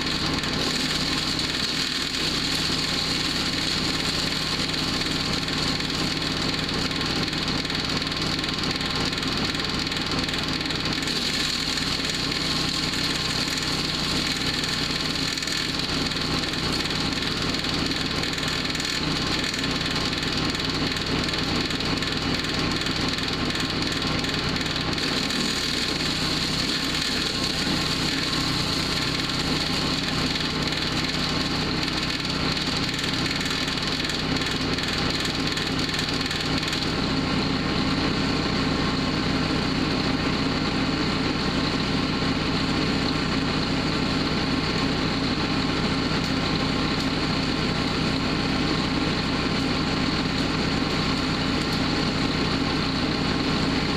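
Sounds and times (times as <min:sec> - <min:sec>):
wood crackling and splintering: 0:00.0 - 0:37.0
wood chipper engine running: 0:00.0 - 0:53.9.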